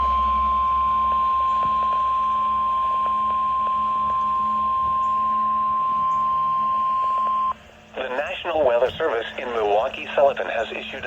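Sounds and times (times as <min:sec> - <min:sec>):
steady high alarm tone: 0:00.0 - 0:07.6
faint radio crackle: 0:01.5 - 0:11.0.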